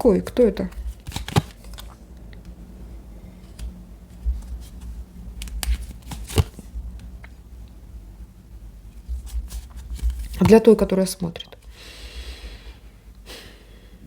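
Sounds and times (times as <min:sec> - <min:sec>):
cards snapping and sliding: 0:00.7 - 0:02.0, 0:03.4 - 0:06.7.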